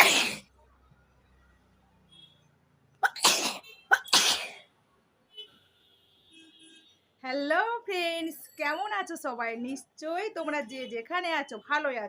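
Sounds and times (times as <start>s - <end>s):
woman sneezing: 0.0s - 0.4s.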